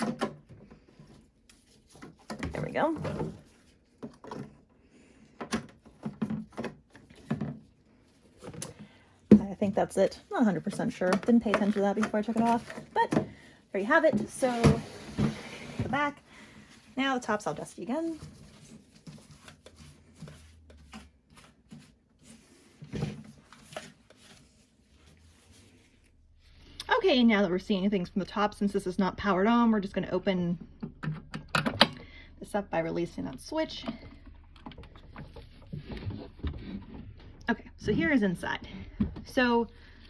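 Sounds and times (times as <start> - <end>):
plastic parts clicking and rubbing: 9.7 - 13.2.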